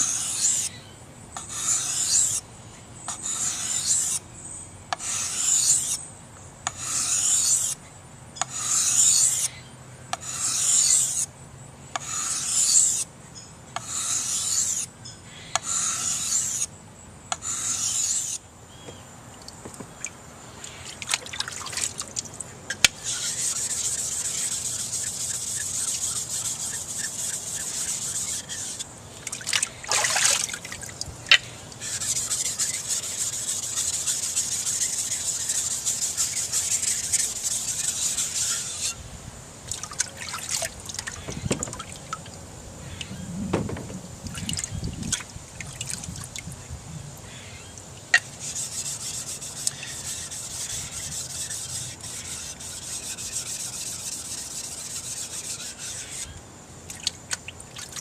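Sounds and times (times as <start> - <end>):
knife sharpened on stone: 1.4 - 2.4, 3.2 - 4.2, 5.0 - 6.0, 6.7 - 7.8, 10.2 - 11.3, 12.0 - 13.0, 13.8 - 14.9, 15.6 - 16.7, 17.5 - 18.4, 23.0 - 28.8, 31.8 - 39.0
handling clicks and knocks: 41.2 - 41.9, 43.5 - 44.1.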